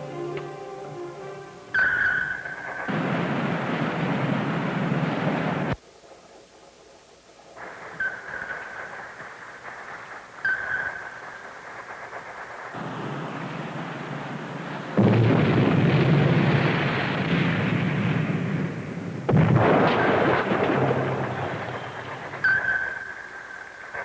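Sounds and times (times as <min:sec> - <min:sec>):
heavy explosion blasts: 0:02.7 - 0:05.8, 0:12.8 - 0:22.8.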